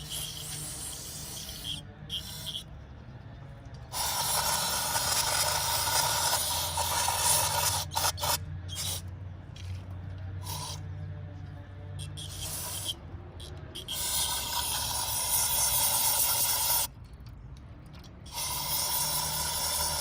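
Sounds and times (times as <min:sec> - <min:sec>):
water spray hissing: 0:03.9 - 0:09.0, 0:10.4 - 0:10.8, 0:12.2 - 0:13.0.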